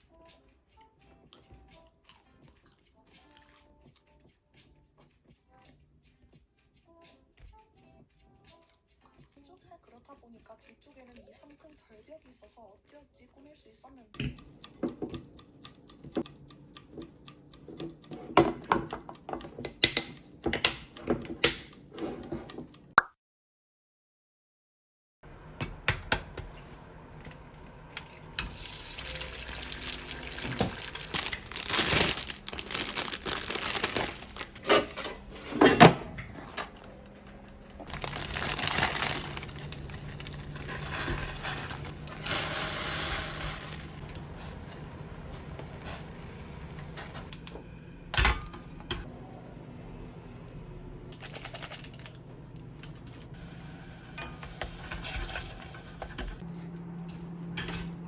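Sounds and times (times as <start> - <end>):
rustling and crinkling: 28.5 - 42.7.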